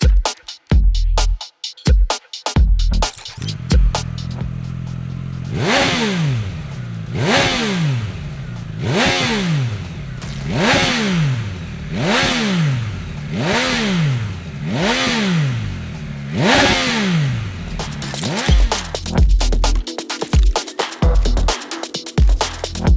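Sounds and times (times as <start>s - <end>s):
motorcycle engine revving: 3.1s - 20.4s.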